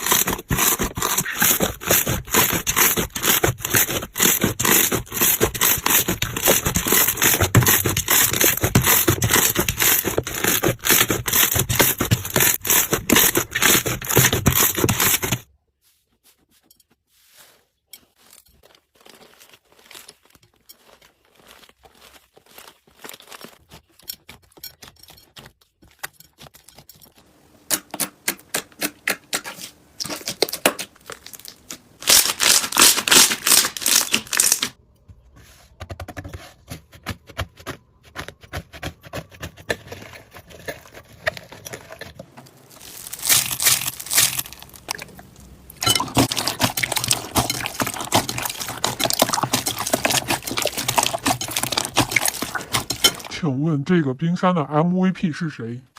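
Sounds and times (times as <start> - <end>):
slime crackling and popping: 28.4 - 34.8, 42.6 - 53.1.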